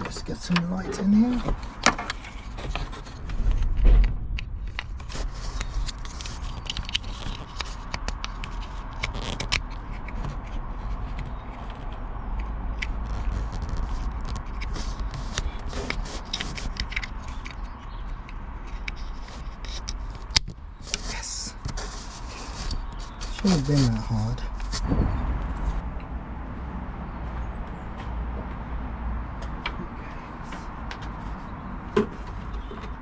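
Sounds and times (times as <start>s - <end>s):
clicks and scrapes of car parts: 0.0s - 26.1s, 29.3s - 33.0s
thump: 3.3s - 5.0s, 24.8s - 26.2s.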